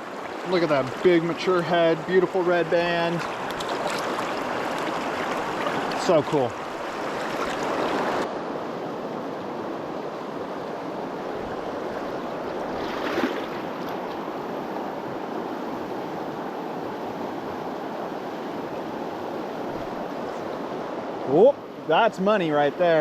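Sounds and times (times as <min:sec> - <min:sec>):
water swish: 0:00.0 - 0:08.3, 0:11.1 - 0:16.2
river water rushing: 0:00.0 - 0:23.0.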